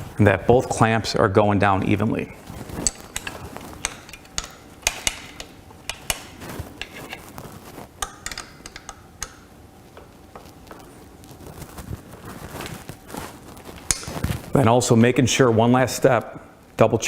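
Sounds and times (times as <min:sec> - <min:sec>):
allen key metallic clicks: 0:02.8 - 0:07.2.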